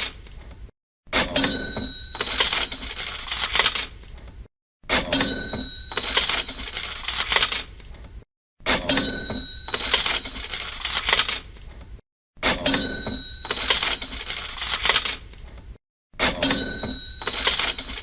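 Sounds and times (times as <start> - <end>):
cash register bell ringing: 1.2 - 3.8, 4.9 - 7.6, 8.8 - 11.4, 12.4 - 15.2, 16.3 - 18.0
coins clattering: 2.1 - 4.0, 5.9 - 7.8, 9.6 - 11.6, 13.4 - 15.4, 16.5 - 18.0.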